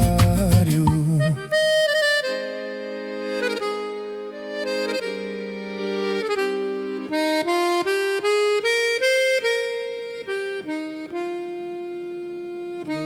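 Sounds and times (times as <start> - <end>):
harmonica playing hymn melody: 0.0 - 13.0.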